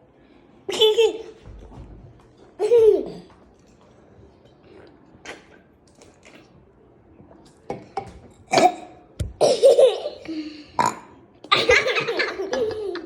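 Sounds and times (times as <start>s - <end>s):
people laughing: 11.5s - 13.0s.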